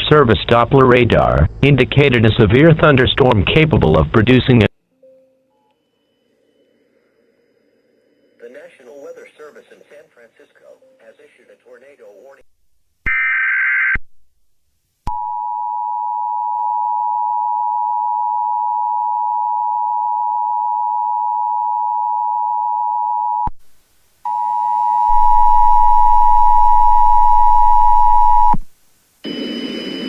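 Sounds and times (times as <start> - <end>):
noisy sound: 0.0 - 4.7, 25.1 - 30.0
low hum: 25.1 - 28.8.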